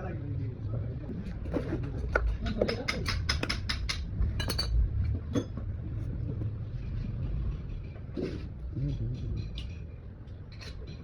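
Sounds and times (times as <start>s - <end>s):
steady low rumble: 3.8s - 11.0s.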